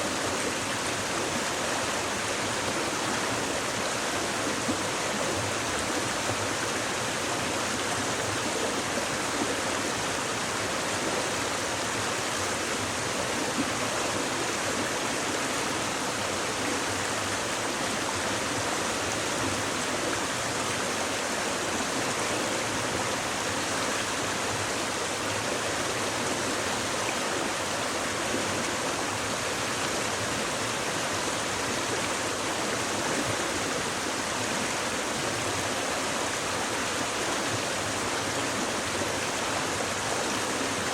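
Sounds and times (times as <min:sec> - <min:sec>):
stream babbling over rocks: 0:00.0 - 0:40.9.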